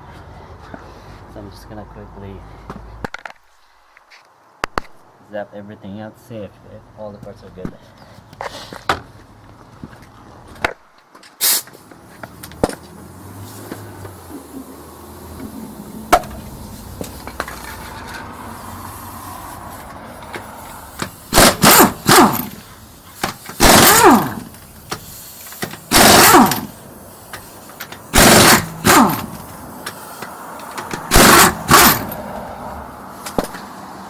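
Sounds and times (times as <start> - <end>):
impact wrench bursts: 11.4 - 33.7.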